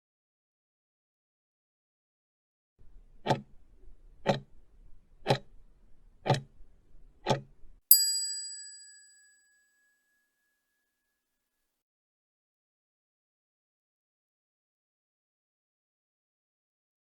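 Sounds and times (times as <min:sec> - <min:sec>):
clock ticking: 0:04.2 - 0:04.5, 0:05.3 - 0:05.5, 0:06.3 - 0:06.5
bell ding: 0:07.9 - 0:10.5.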